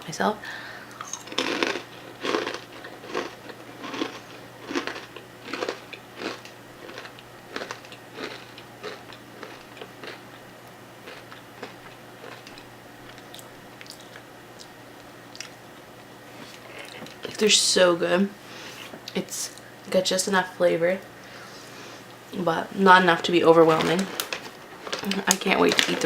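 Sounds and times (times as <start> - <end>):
person chewing crunchy pretzels: 0.9 - 14.7, 24.0 - 26.0.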